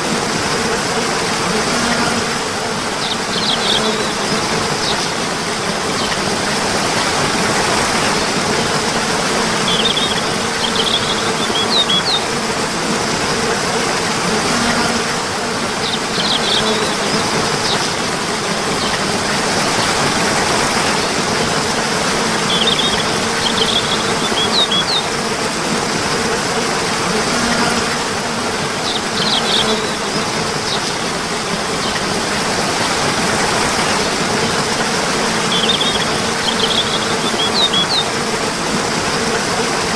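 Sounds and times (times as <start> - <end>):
flowing water rushing: 0.0 - 39.9
bird chirps: 3.0 - 4.1, 9.6 - 12.2, 22.5 - 25.1, 28.9 - 29.9, 35.5 - 38.1.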